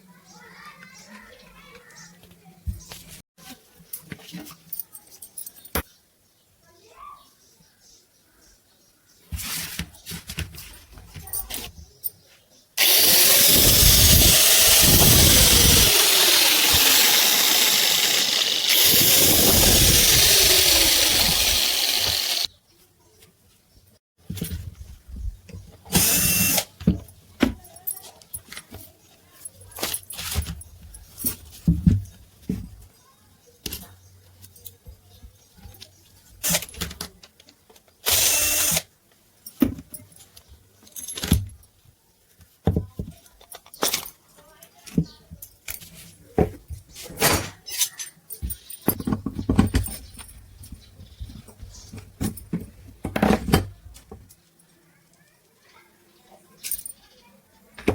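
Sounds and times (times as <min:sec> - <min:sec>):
angle grinder motor running: 0:12.8 - 0:22.5, 0:26.0 - 0:26.7, 0:38.1 - 0:38.8
metal parts clicking and knocking: 0:12.8 - 0:22.5.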